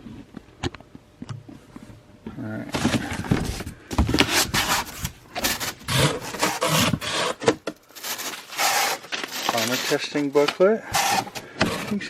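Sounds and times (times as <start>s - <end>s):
box packaging rustling: 2.6s - 12.0s.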